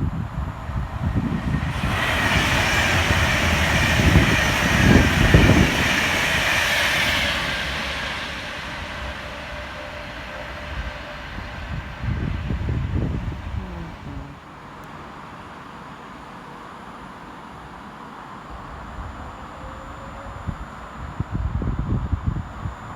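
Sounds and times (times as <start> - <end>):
train passing: 0.0 - 14.3.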